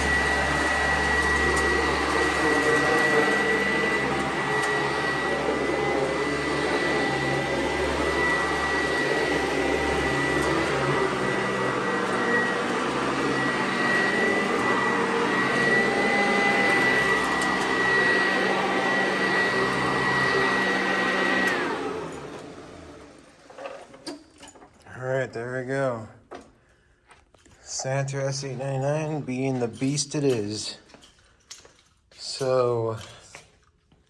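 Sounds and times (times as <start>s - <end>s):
vacuum cleaner motor whine: 0.0s - 24.1s.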